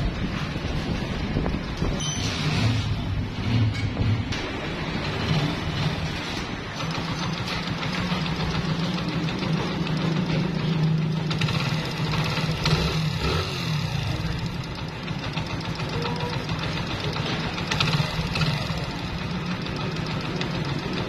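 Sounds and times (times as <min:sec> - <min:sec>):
motorcycle engine idling: 0:04.9 - 0:21.0.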